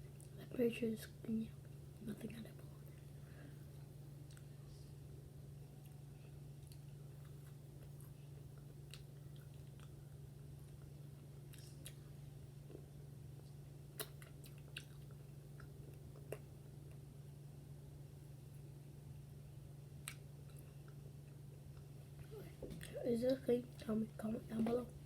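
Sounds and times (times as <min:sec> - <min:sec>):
low electrical hum: 0:00.0 - 0:25.0
chewing fried chicken: 0:05.6 - 0:17.2.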